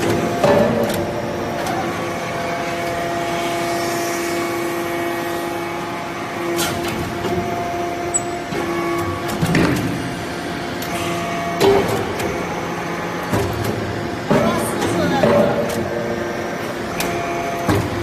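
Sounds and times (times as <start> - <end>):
hydraulic press humming: 0.0 - 18.0.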